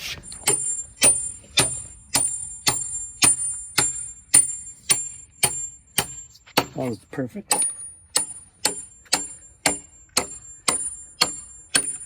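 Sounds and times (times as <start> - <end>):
high metallic ring: 0.4 - 6.4, 7.5 - 12.0
hammer striking bolt: 7.5 - 12.0.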